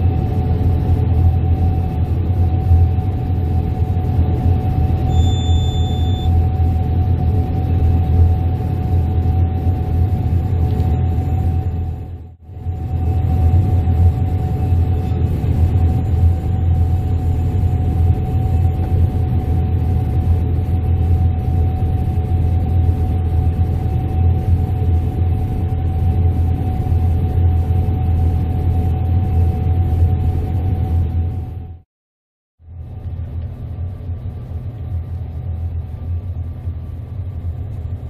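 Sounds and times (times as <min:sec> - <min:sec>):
combine harvester rumbling: 0:00.0 - 0:31.8, 0:32.6 - 0:38.0
steady machine whine: 0:00.0 - 0:31.8.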